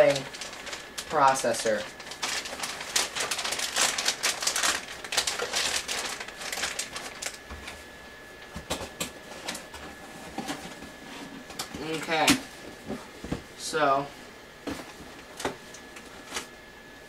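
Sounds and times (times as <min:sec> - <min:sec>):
packaging crinkling and rustling: 0:00.0 - 0:09.7.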